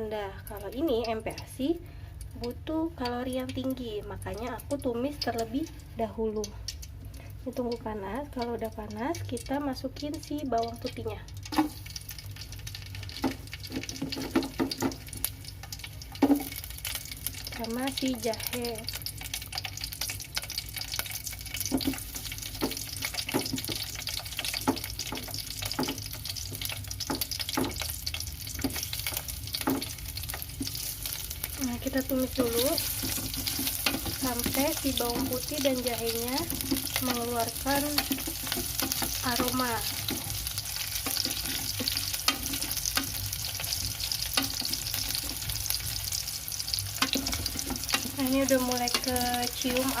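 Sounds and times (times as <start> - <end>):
garlic sizzling in hot oil: 0.0 - 50.0
utensil clicking against pan: 13.0 - 45.6, 46.7 - 50.0.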